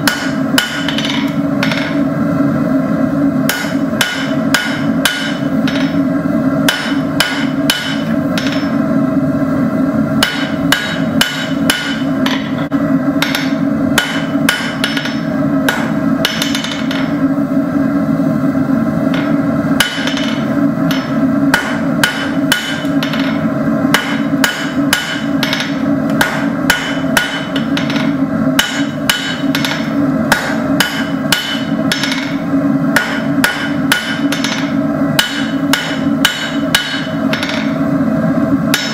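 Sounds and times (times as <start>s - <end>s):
hammer ringing on anvil: 3.5s - 6.0s, 6.7s - 8.8s, 10.2s - 12.6s, 13.2s - 17.2s, 19.1s - 32.4s, 33.0s - 37.7s.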